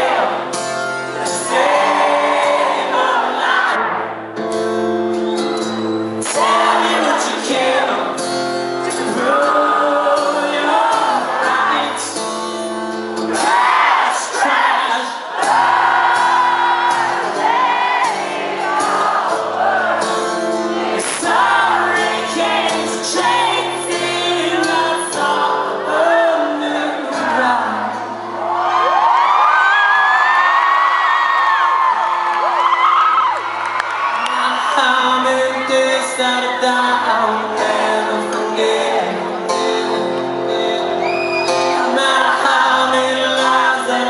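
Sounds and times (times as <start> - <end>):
man singing: 0.0 - 0.5, 1.2 - 3.8, 6.2 - 15.6, 20.9 - 28.2, 34.3 - 44.0
live rock band: 0.0 - 29.2, 31.8 - 44.0.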